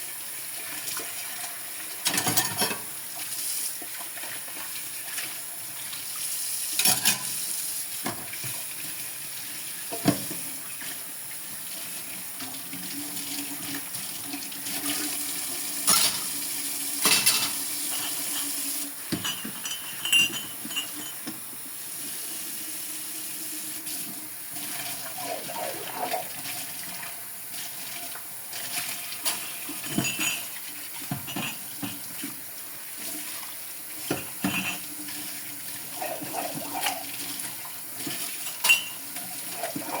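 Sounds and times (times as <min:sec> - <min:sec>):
dishes clinking: 0:19.2 - 0:21.3, 0:31.1 - 0:32.0, 0:34.1 - 0:34.9, 0:38.5 - 0:39.1.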